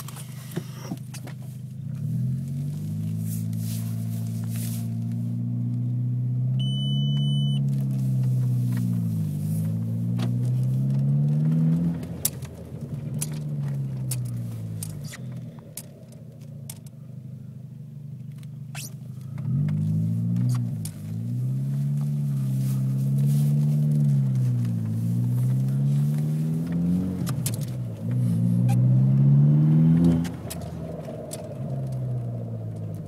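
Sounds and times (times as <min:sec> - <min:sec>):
car engine running: 0:00.0 - 0:33.0
high beep: 0:06.6 - 0:07.6.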